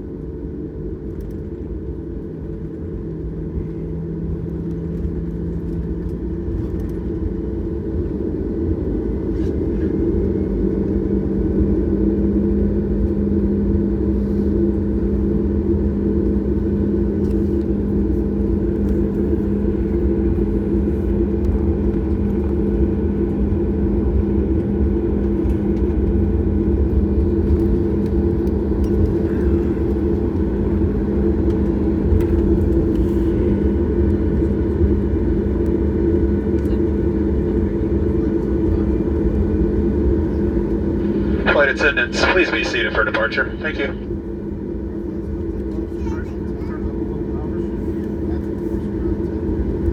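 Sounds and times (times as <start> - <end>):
airplane cabin rumble: 0.0 - 49.9
jet engines humming: 39.2 - 45.5.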